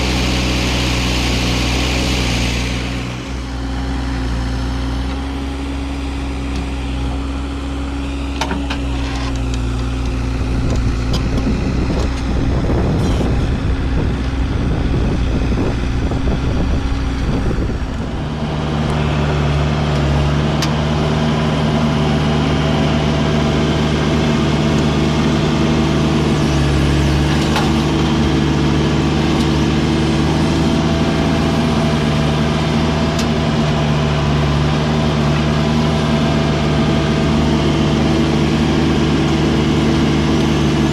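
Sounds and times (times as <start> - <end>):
heavy diesel engine running: 0.0 - 40.9.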